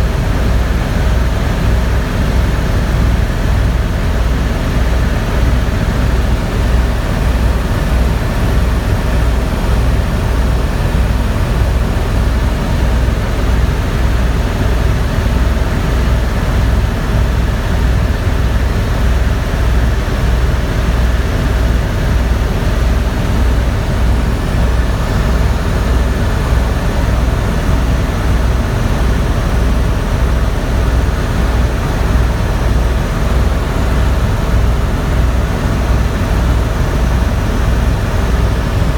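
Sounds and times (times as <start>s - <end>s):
helicopter engine and rotor: 0.0s - 38.9s.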